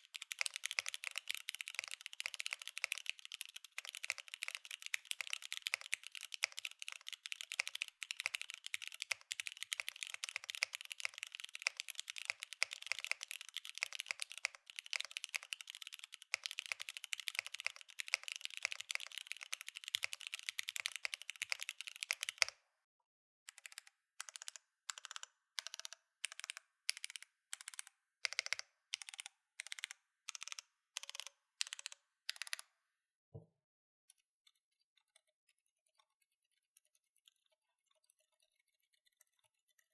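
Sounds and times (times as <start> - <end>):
mechanical keyboard typing: 0.0 - 22.6, 23.5 - 32.6.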